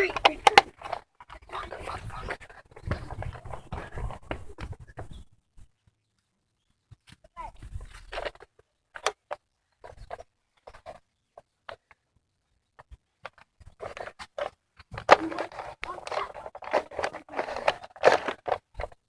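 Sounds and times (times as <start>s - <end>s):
footsteps: 0.0s - 5.2s
knocks and clicks: 12.8s - 19.0s.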